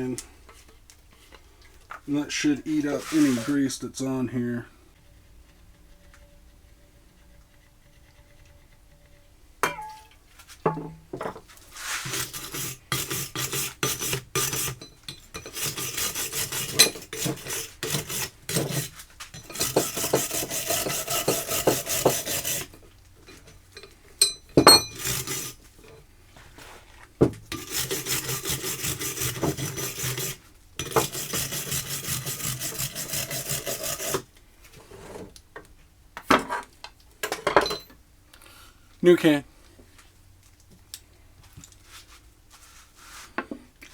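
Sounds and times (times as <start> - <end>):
rapid scrubbing of metal: 2.3 - 3.8, 11.8 - 23.5, 24.2 - 25.6, 27.5 - 34.3.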